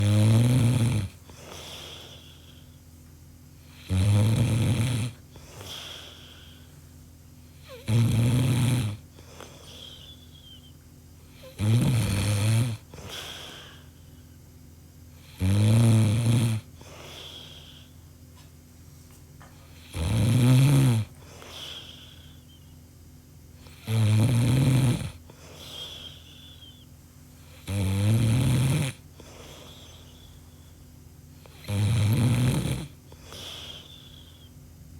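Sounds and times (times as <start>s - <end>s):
person snoring: 0.0s - 2.6s, 3.7s - 6.6s, 7.6s - 9.0s, 11.4s - 13.9s, 15.2s - 17.9s, 19.8s - 22.4s, 23.6s - 26.8s, 27.5s - 30.0s, 31.4s - 34.5s
whistling breathing: 9.6s - 10.8s, 25.7s - 26.9s.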